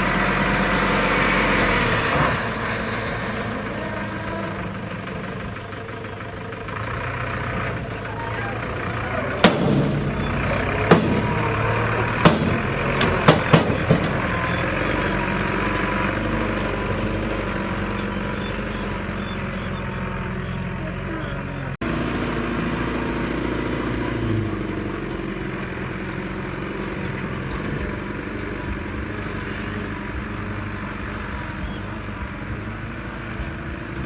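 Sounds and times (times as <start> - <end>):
construction machine engine running: 0.0 - 34.0
sharp knocks: 9.4 - 14.8.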